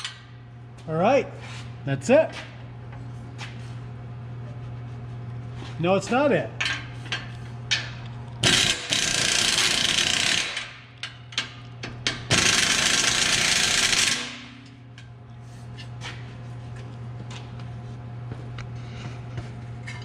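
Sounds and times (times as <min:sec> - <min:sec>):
steady low hum: 0:00.0 - 0:20.0
power tool running: 0:08.4 - 0:10.7, 0:12.3 - 0:14.5.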